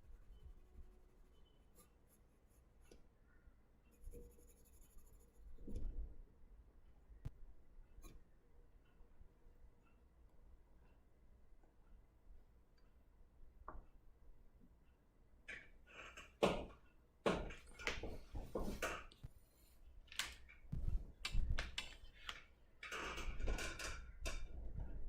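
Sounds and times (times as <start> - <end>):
knocks taps and rustling: 16.4 - 19.3.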